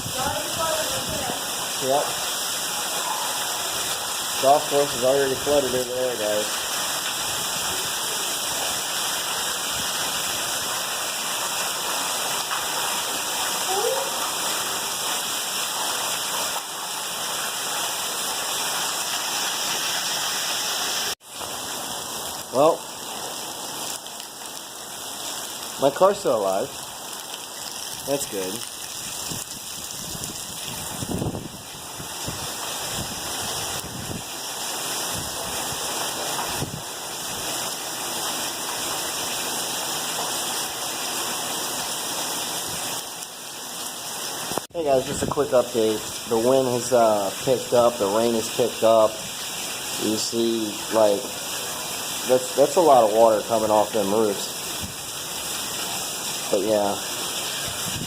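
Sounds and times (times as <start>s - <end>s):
wind buffeting microphone: 0.0s - 1.4s, 29.0s - 34.3s, 36.5s - 36.9s, 57.6s - 58.0s
heavy rain pouring: 0.0s - 58.0s.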